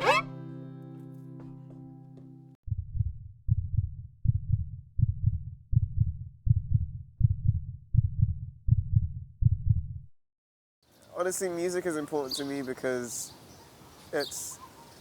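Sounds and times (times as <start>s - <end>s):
heartbeat thumps: 2.7s - 10.1s.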